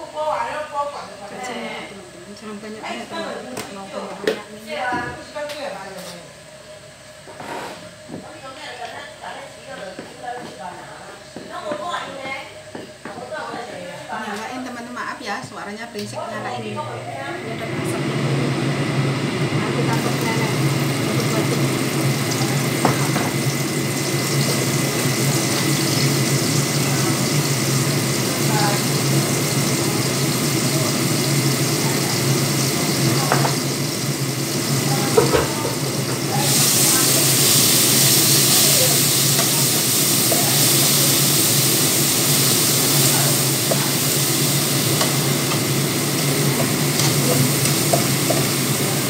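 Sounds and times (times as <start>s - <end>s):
kitchen appliance humming: 0.0s - 49.0s.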